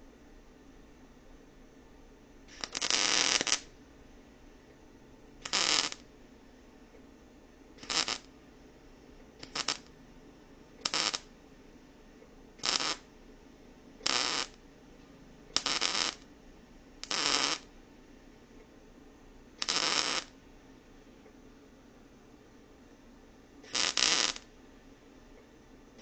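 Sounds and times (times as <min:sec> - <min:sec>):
welder arcing in short bursts: 0:02.5 - 0:03.7, 0:05.4 - 0:06.0, 0:07.8 - 0:08.3, 0:09.4 - 0:09.9, 0:10.8 - 0:11.3, 0:12.6 - 0:13.0, 0:14.0 - 0:14.6, 0:15.6 - 0:16.2, 0:17.0 - 0:17.6, 0:19.6 - 0:20.3, 0:23.6 - 0:24.4.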